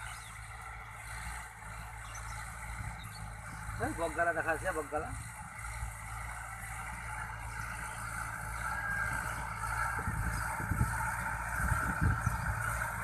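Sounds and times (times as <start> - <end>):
motor engine running: 0.0 - 13.0
low rumbling thumps: 9.9 - 13.0.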